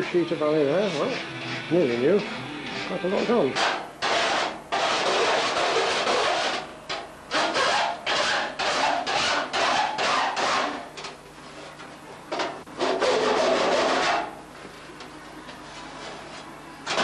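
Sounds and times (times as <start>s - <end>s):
hand tool scraping aluminium sheet: 2.8s - 6.7s, 7.3s - 10.9s, 12.8s - 14.3s.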